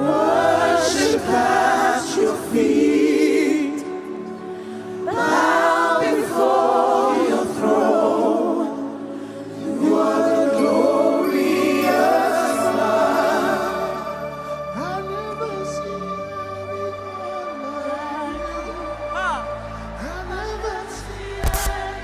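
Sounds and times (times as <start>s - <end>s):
group singing gospel song: 0.0s - 15.0s, 19.7s - 22.0s.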